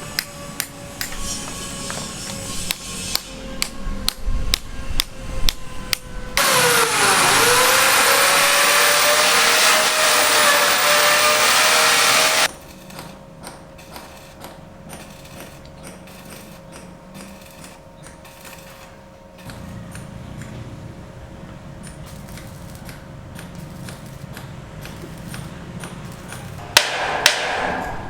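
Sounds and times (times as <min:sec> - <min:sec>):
power tool whining under load: 0:00.0 - 0:12.5
hammer knocks: 0:26.6 - 0:28.0.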